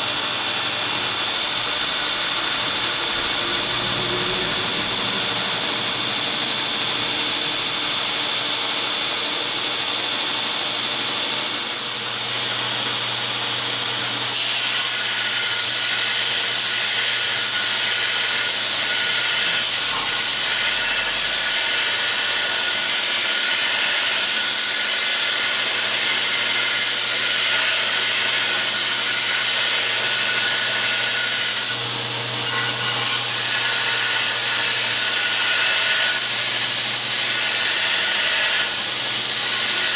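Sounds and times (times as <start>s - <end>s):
motor hum: 0.0s - 9.2s
abrasive belt hissing: 1.0s - 8.3s.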